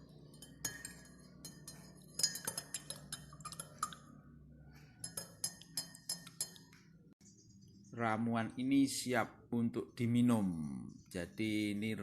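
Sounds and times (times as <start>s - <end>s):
spoon clinking in a glass: 0.0s - 4.2s, 4.8s - 6.7s.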